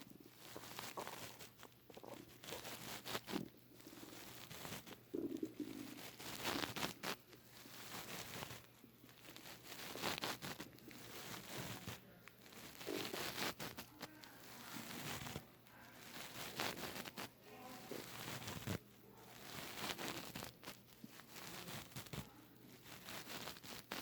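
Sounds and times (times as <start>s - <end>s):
stomach rumbling and gurgling: 0.0s - 18.8s
rustling and crackling: 0.0s - 24.0s.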